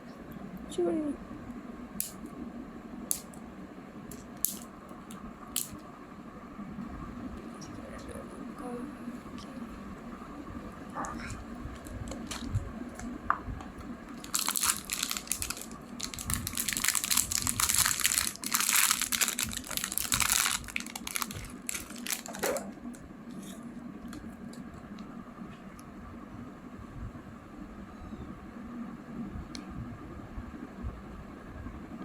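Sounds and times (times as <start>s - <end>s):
plastic packaging crinkling: 11.7s - 13.1s, 14.1s - 24.7s.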